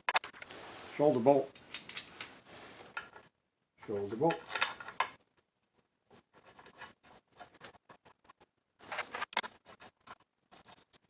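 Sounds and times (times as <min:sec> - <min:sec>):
bolts clicking and tapping: 0:01.5 - 0:02.4.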